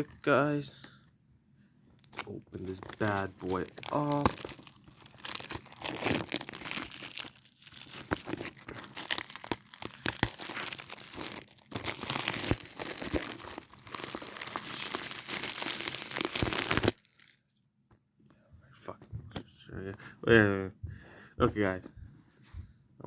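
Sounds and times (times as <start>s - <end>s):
plastic wrap crackling: 0.0s - 0.6s, 2.0s - 17.4s.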